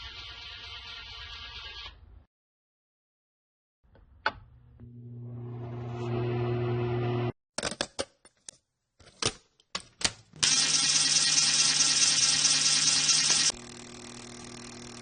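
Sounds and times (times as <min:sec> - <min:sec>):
low hum: 0:04.7 - 0:07.3.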